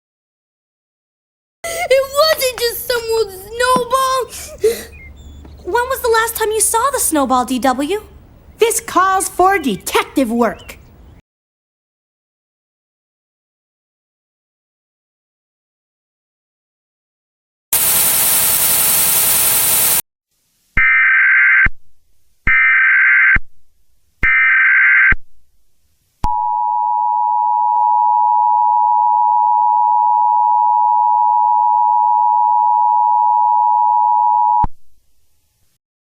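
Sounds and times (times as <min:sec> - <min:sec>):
loud static burst: 0:17.8 - 0:20.0.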